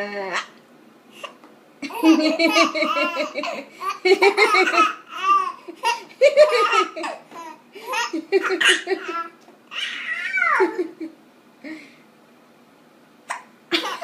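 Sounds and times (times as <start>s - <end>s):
baby laughing: 1.8s - 11.1s, 13.3s - 14.0s.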